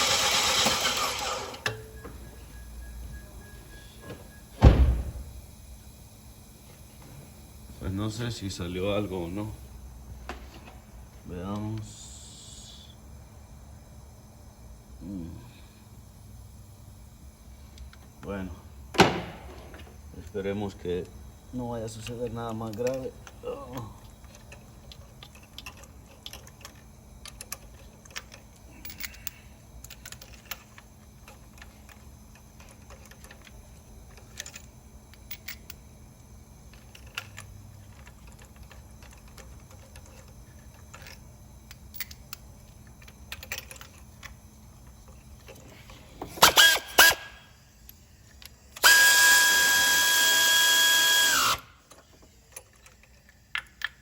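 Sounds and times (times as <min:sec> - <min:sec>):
electric power tool whining: 0:00.0 - 0:01.7, 0:46.2 - 0:47.4, 0:48.8 - 0:51.8.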